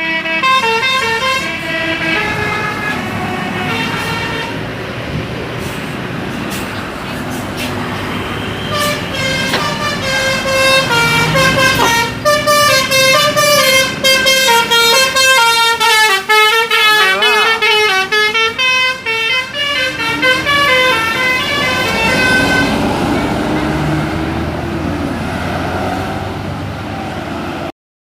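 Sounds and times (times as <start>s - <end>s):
bus musical horn melody: 0.0s - 4.8s, 8.0s - 24.4s.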